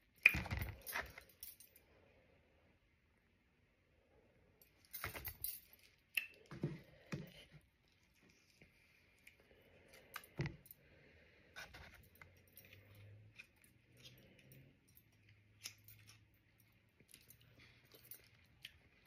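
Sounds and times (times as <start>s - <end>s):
oyster shells and utensils clinking: 4.9s - 6.5s.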